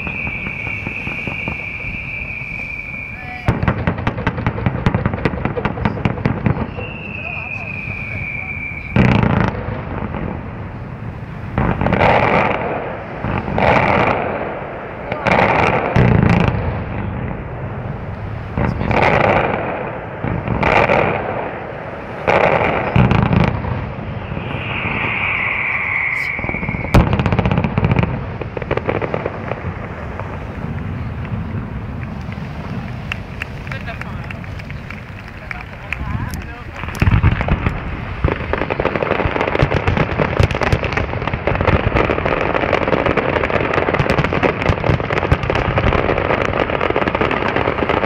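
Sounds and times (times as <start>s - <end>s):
firework crackling: 0.0s - 48.0s
firework whistling: 0.0s - 48.0s
firework shell bursts: 22.0s - 31.0s.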